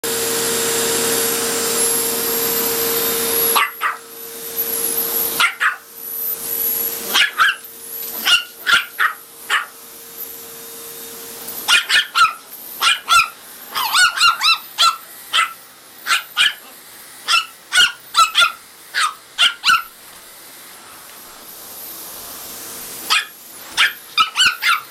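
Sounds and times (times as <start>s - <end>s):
vacuum cleaner running: 0.0s - 24.9s
dog barking: 3.5s - 4.0s, 5.4s - 5.8s, 7.1s - 9.8s, 11.7s - 20.0s, 23.1s - 24.9s.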